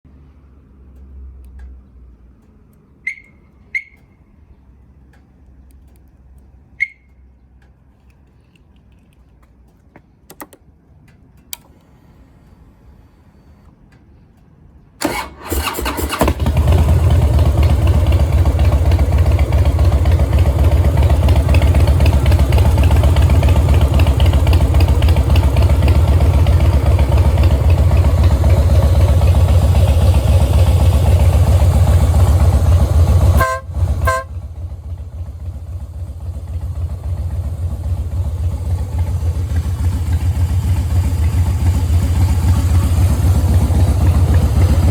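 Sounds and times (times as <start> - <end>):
short horn beeps: 3.0 - 4.2, 6.8 - 7.2, 33.4 - 34.4
motorcycle electric starter: 15.0 - 34.3
motorcycle engine idling loud: 16.5 - 44.9.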